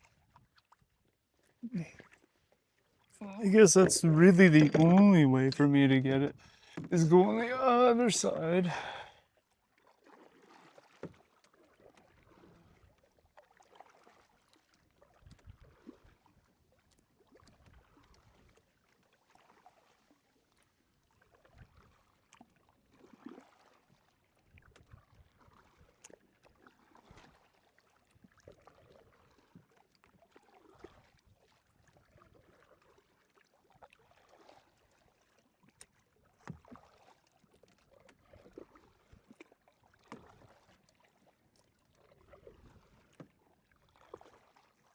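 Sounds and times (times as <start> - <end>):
paddle strokes in water: 9.8 - 16.1, 21.5 - 44.9.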